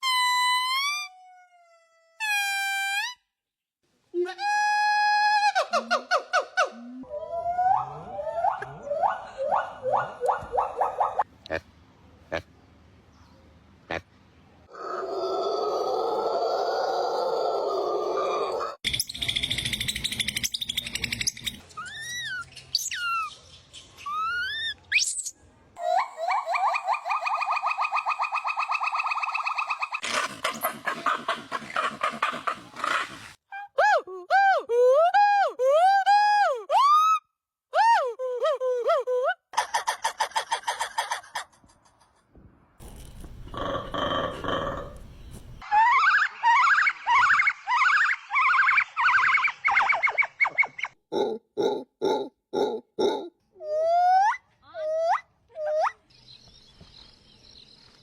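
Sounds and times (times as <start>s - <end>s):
animal trilling high chirps: 18.8s - 25.3s, 45.6s - 51.0s, 53.7s - 56.1s
monkey squeaky calls: 18.8s - 33.2s, 45.6s - 51.0s, 53.8s - 56.0s
monkey grunting calls: 30.0s - 33.2s, 42.8s - 45.0s, 45.6s - 56.0s.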